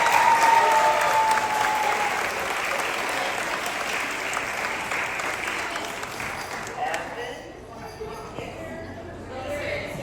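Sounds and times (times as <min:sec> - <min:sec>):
audience applauding: 0:00.0 - 0:06.8.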